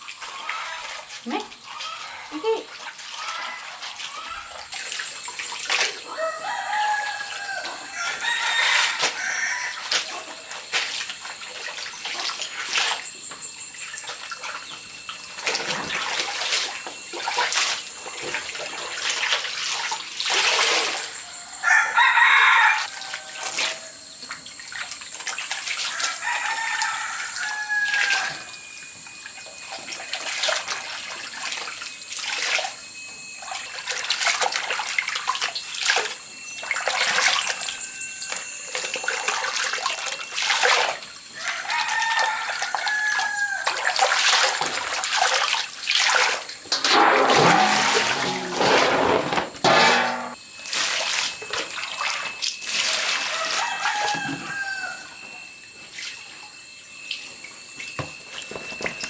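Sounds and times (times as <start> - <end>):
water sounds: 0.0 - 21.3, 22.9 - 53.9
high-pitched insect drone: 2.1 - 46.7, 50.3 - 59.0
rooster crowing: 3.2 - 4.6, 6.0 - 10.5, 21.2 - 24.1, 25.8 - 28.6, 41.4 - 44.0, 46.8 - 50.4, 53.2 - 55.6.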